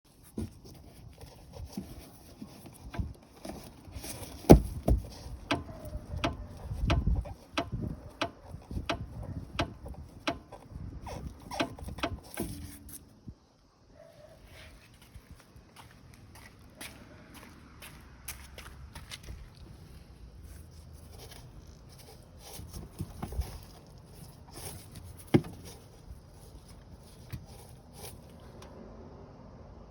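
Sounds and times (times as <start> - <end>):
suspension knocking and clicking: 4.4 - 12.8.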